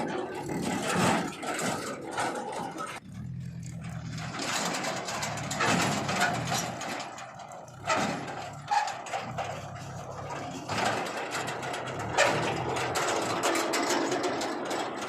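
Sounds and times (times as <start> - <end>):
heavy machinery diesel engine: 0.0 - 15.0.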